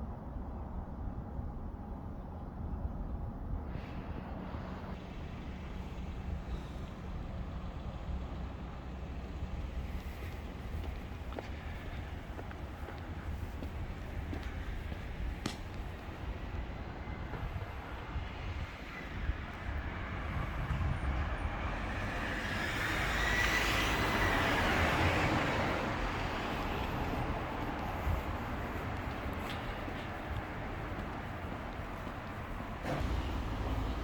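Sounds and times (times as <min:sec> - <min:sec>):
steady low rumble: 0:00.0 - 0:34.0
vehicle passing by: 0:17.4 - 0:34.0.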